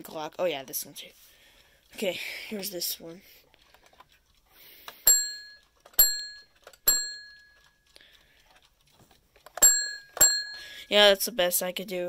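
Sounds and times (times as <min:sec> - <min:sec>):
alarm clock bell dings: 0:05.1 - 0:07.6, 0:09.6 - 0:11.0.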